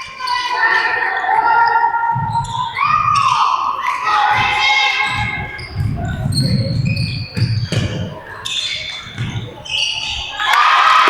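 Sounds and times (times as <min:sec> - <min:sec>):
sneaker squeaks: 0:00.0 - 0:10.6
basketball dribbling: 0:02.1 - 0:03.4, 0:04.3 - 0:09.9.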